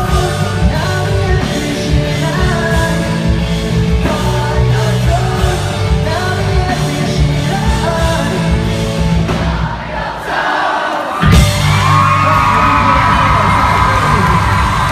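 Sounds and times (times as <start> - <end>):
lead singer singing: 0.0 - 11.5
pop-punk band playing: 0.0 - 14.9.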